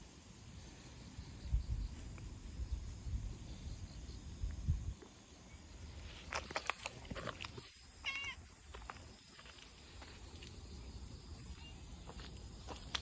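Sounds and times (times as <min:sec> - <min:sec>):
light clicks and rustles: 0:06.1 - 0:07.7
cat meowing: 0:08.0 - 0:08.4.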